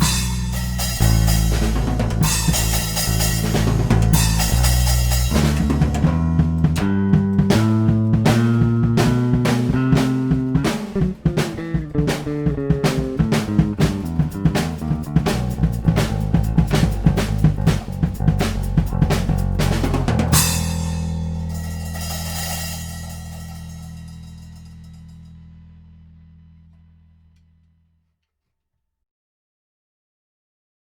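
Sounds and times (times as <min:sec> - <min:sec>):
cymbal crash: 0:00.0 - 0:05.9, 0:20.4 - 0:25.1
busy drumming: 0:00.0 - 0:24.8
bass guitar: 0:00.0 - 0:28.0
electric guitar: 0:06.8 - 0:15.2.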